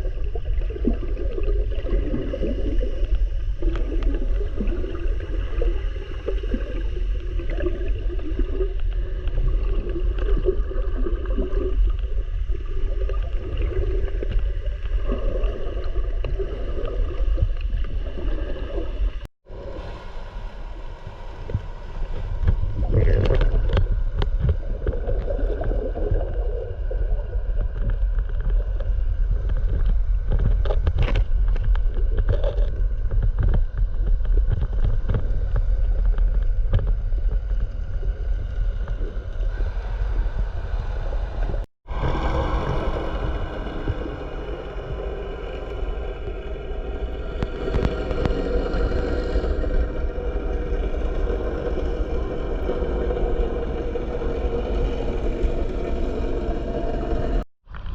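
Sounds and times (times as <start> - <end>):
underwater rumble: 0.0 - 57.9
faint knocks and gurgles: 21.1 - 57.9.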